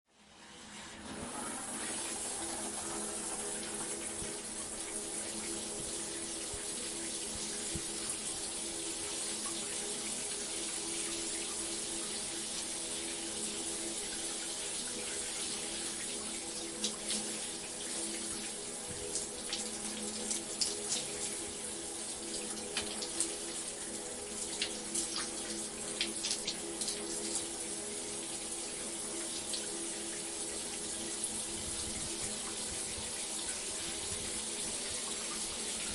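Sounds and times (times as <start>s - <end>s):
shower spray hissing: 0.9s - 27.7s.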